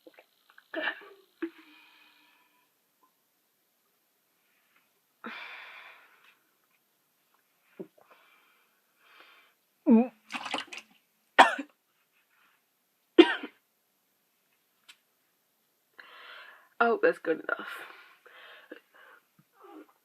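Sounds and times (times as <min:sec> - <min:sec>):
woman retching coughs: 0:11.4 - 0:11.7, 0:13.2 - 0:13.6.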